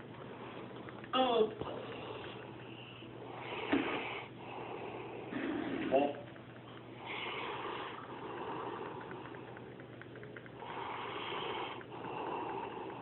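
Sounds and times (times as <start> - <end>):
snoring: 3.4 - 6.1, 7.0 - 9.4, 10.6 - 13.0.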